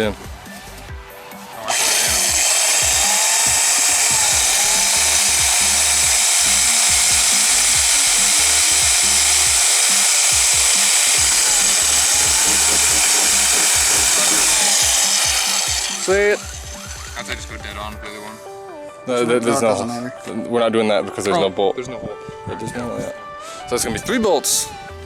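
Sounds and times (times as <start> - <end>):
power drill boring through metal: 1.6 - 17.8.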